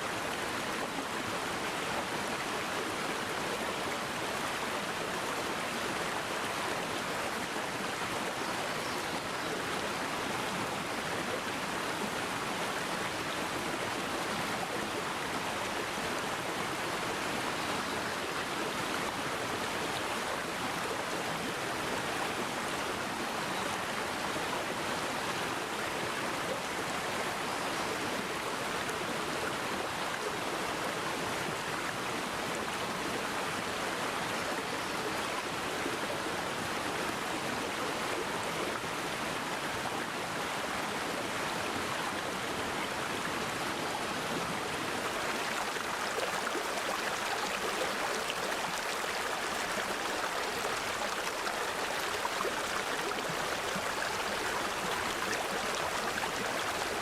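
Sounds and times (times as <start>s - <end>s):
stream water rushing: 0.0s - 57.0s.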